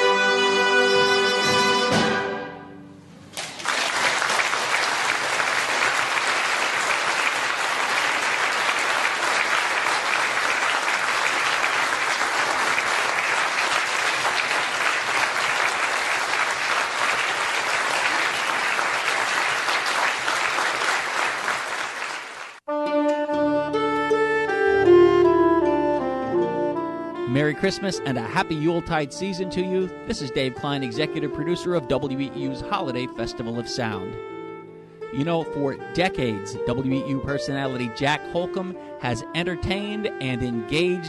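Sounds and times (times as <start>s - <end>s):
orchestral music: 0.0s - 3.2s, 22.7s - 41.0s
audience applauding: 3.4s - 22.6s.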